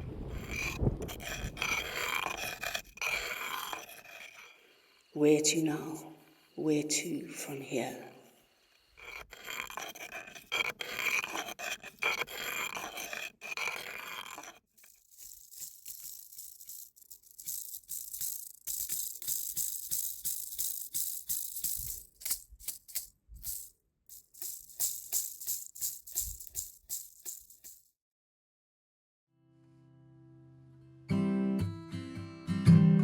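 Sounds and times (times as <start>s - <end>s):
hand shaker rattling: 13.6s - 27.9s
music: 29.4s - 33.0s.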